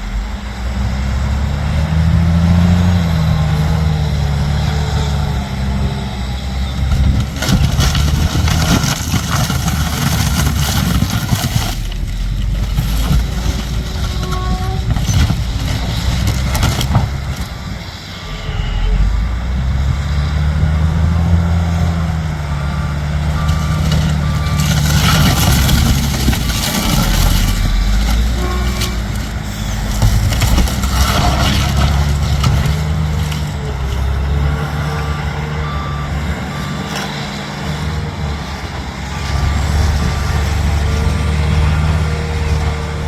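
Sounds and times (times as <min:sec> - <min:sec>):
heavy vehicle engine running: 0:00.0 - 0:43.0
reversing beeper: 0:16.3 - 0:20.4, 0:21.6 - 0:30.3, 0:33.0 - 0:42.9.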